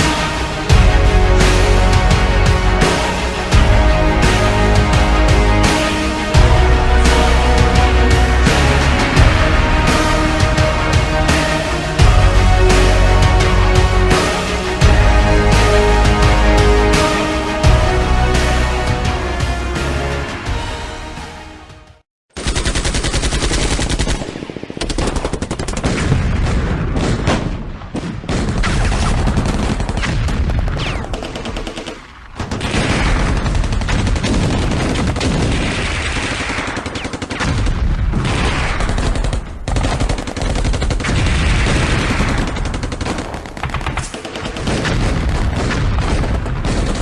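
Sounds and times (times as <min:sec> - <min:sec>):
airsoft guns firing: 0:28.3 - 0:47.0.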